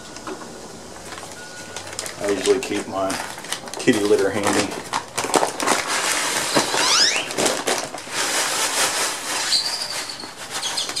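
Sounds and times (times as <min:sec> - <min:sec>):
cat litter pouring onto concrete: 0:01.1 - 0:11.0.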